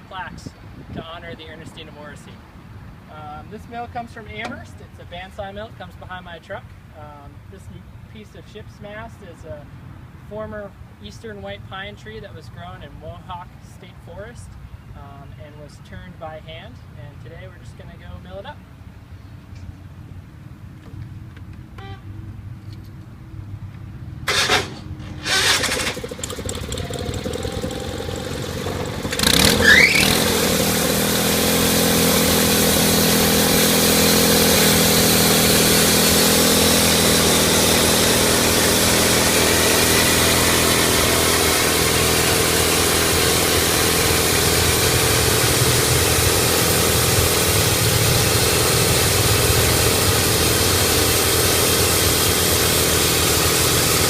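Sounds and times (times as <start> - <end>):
rising engine whine: 23.4 - 54.0
sawmill engine running: 24.2 - 54.0
short loud bursts: 24.2 - 54.0.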